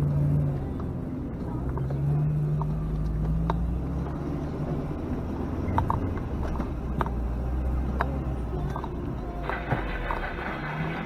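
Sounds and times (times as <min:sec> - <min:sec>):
vehicle engine droning: 0:00.0 - 0:11.0
sharp clicks and knocks: 0:05.7 - 0:07.2.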